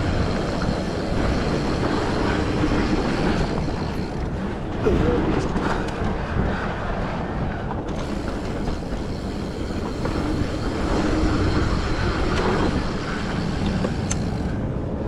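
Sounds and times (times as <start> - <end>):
bike rattling over ground: 0.0 - 6.6, 7.8 - 15.0
wind on microphone: 0.0 - 15.0
small clicks: 13.6 - 14.6.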